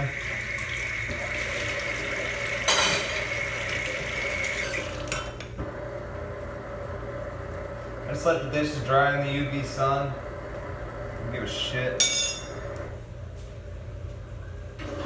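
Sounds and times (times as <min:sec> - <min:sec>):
tap water running: 0:00.0 - 0:05.6
dishes clattering: 0:02.6 - 0:03.3, 0:12.0 - 0:12.6.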